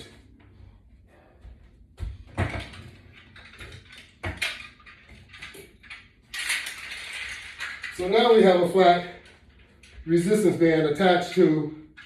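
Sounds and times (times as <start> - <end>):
exercise equipment clicks and knocks: 2.0 - 8.3.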